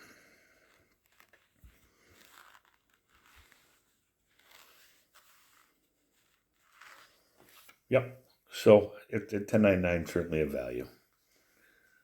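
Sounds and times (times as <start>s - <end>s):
faint handling rustles and clicks: 0.6s - 7.9s.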